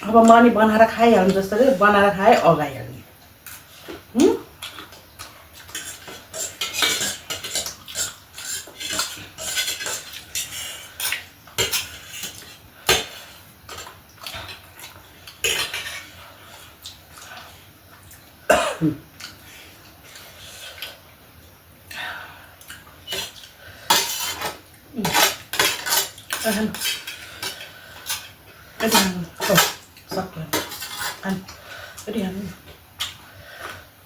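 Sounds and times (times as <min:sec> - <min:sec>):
cutlery scraping on a plate: 0:05.6 - 0:13.1, 0:15.4 - 0:16.1, 0:23.1 - 0:29.8, 0:30.5 - 0:31.4
cough or grunt: 0:18.5 - 0:19.0.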